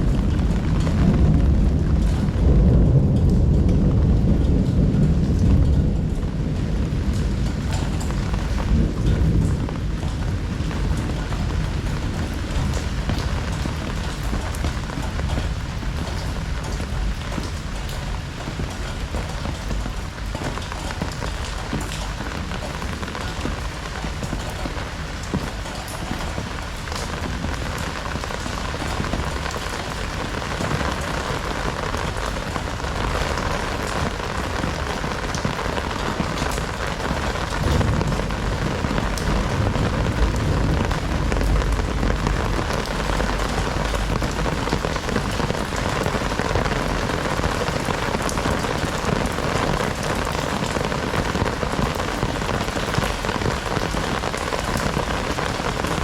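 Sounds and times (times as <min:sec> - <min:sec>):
low rumble: 0:00.0 - 0:17.2, 0:37.0 - 0:45.8
heavy rain pouring: 0:00.0 - 0:56.0.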